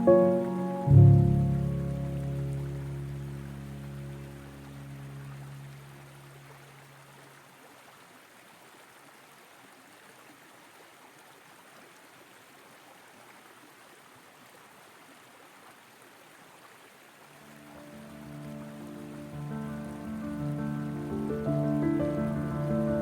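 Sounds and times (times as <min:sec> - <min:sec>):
soft music: 0:00.0 - 0:06.2, 0:17.4 - 0:23.0
stream flowing: 0:00.0 - 0:23.0.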